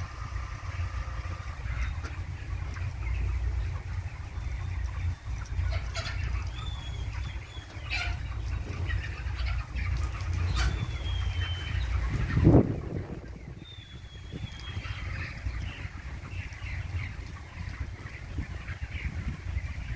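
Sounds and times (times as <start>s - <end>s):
chickens clucking: 0.0s - 19.9s
high chick peeps: 0.0s - 19.9s
steady low rumble: 0.0s - 19.9s.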